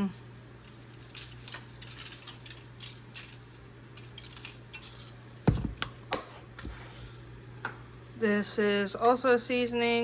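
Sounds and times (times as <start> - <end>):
spice shaker rattling: 0.6 - 5.2.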